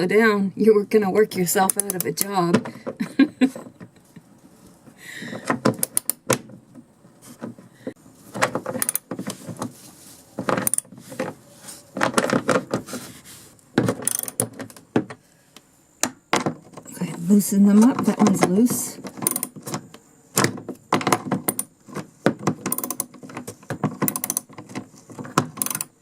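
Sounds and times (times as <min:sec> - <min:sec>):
wrench clicking and clinking: 0:14.0 - 0:14.5, 0:19.2 - 0:19.6, 0:22.7 - 0:23.1, 0:24.0 - 0:24.5, 0:25.5 - 0:26.0.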